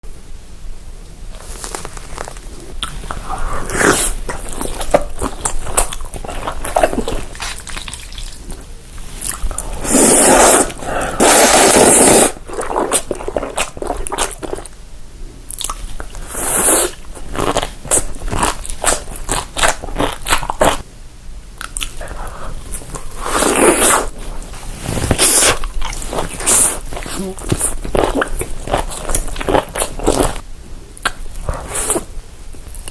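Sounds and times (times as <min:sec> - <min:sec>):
wet mouth sounds: 0:02.5 - 0:14.8, 0:15.5 - 0:20.8, 0:21.6 - 0:30.4, 0:31.0 - 0:32.9
crunchy food bites and chewing: 0:15.5 - 0:20.8, 0:25.1 - 0:30.4.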